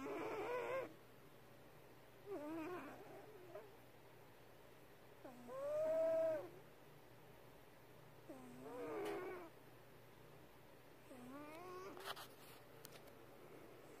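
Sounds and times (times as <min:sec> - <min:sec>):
cat snoring: 0:00.0 - 0:00.9, 0:02.3 - 0:03.7, 0:05.2 - 0:06.6, 0:08.3 - 0:09.5, 0:11.1 - 0:12.0.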